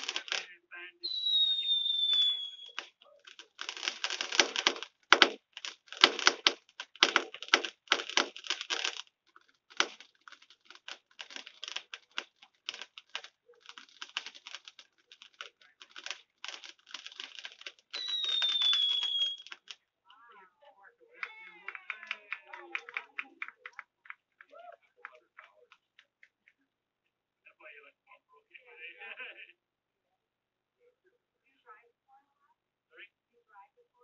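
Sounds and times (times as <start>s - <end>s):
fireworks crackling: 0.0s - 19.8s, 21.2s - 24.0s
firework whistle: 1.0s - 2.9s, 18.0s - 19.6s.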